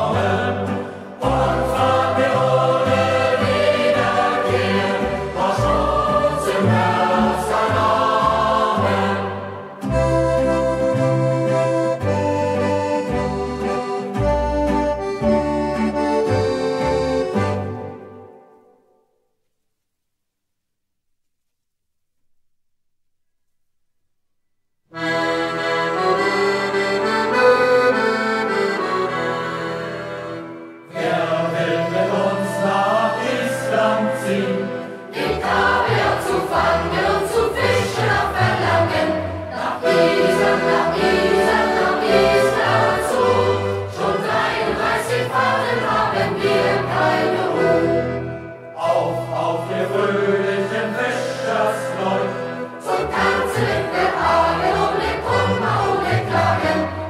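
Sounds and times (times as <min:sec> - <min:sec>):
youth choir singing: 0:00.0 - 0:10.1, 0:30.9 - 0:48.2, 0:48.8 - 0:57.0
accordion playing held chords: 0:00.0 - 0:18.5, 0:24.9 - 0:57.0.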